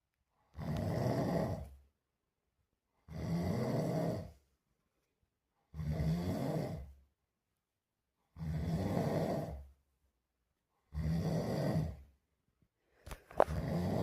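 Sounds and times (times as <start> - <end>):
person snoring: 0.5 - 1.8, 3.0 - 4.4, 5.7 - 7.0, 8.3 - 9.7, 10.9 - 12.2, 13.3 - 14.0.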